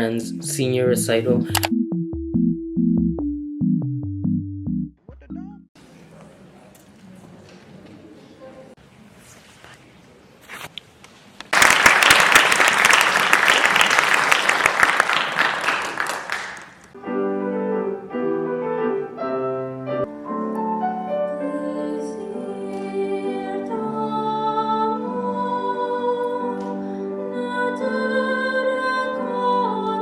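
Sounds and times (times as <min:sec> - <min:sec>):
piano playing slow chords: 0:00.0 - 0:05.7, 0:17.0 - 0:23.9
audience applauding: 0:11.5 - 0:17.0.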